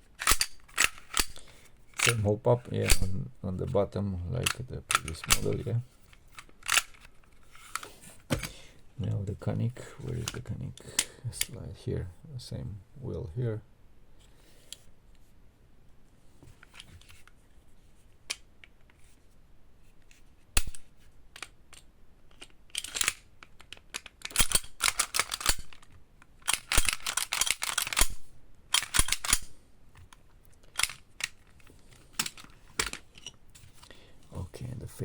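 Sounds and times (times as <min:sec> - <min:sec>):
plastic and metal parts scraping: 0:00.0 - 0:08.6, 0:09.8 - 0:11.5, 0:21.4 - 0:34.0
parts clicking into place: 0:00.1 - 0:03.2, 0:04.4 - 0:08.6, 0:10.0 - 0:11.6, 0:20.0 - 0:34.0.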